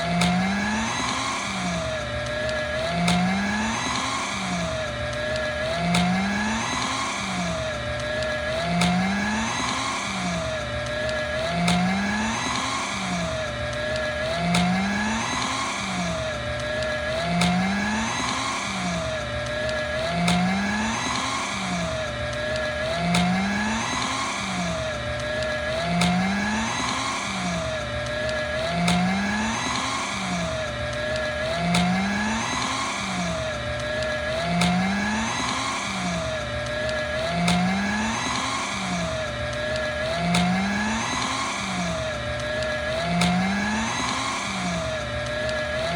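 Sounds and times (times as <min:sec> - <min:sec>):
paper shredder motor running: 0:00.0 - 0:45.9.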